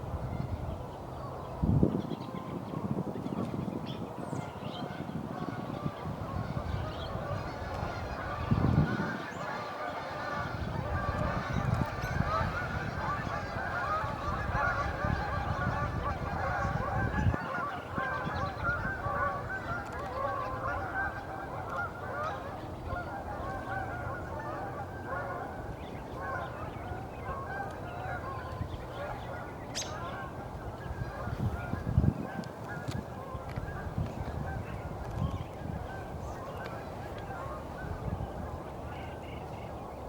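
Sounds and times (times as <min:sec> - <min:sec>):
wind rumble on microphone: 0:00.0 - 0:40.0
geese honking: 0:04.4 - 0:35.0, 0:35.7 - 0:39.7.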